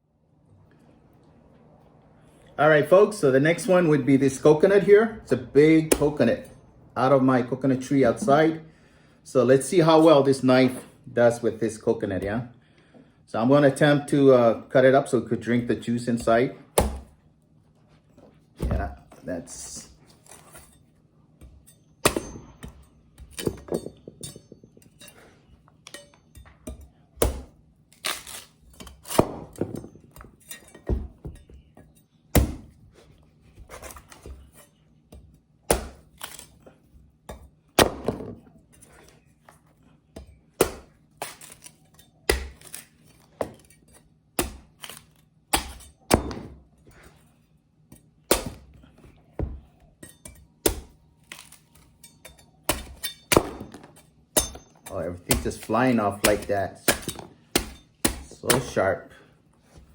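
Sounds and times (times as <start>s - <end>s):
knife chopping coconut husk: 5.8s - 6.5s, 16.1s - 17.2s, 25.9s - 32.8s, 33.6s - 36.6s, 40.1s - 47.1s, 48.2s - 59.0s.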